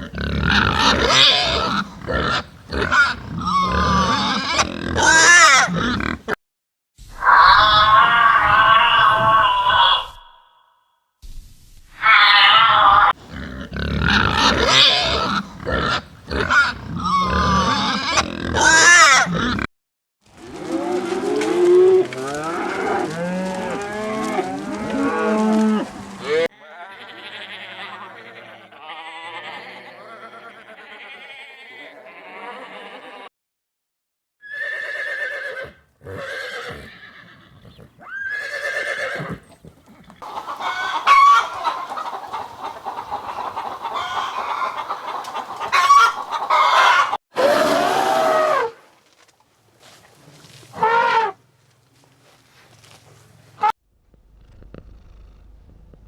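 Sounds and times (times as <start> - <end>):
farm animal calls: 0.0 - 6.4, 12.0 - 19.7, 20.6 - 33.2, 34.5 - 48.7.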